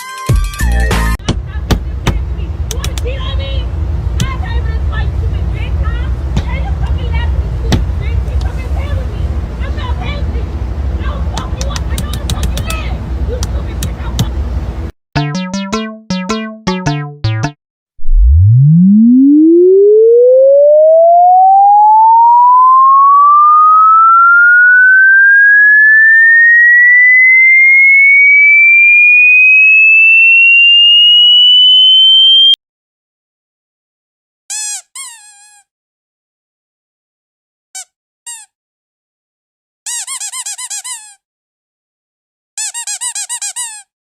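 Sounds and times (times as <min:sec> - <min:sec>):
short pitched notes: 0:15.2 - 0:27.5
rising sine tone sweep: 0:18.0 - 0:32.6
brief high squeaks: 0:34.5 - 0:35.7.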